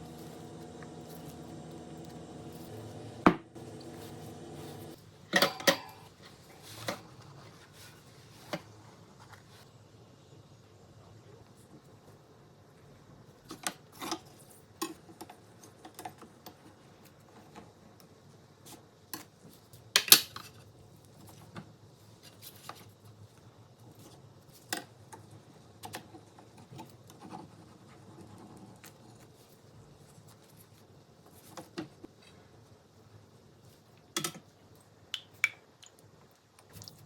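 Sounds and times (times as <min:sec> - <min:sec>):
kitchen utensils and dishes clattering: 0:05.4 - 0:06.1.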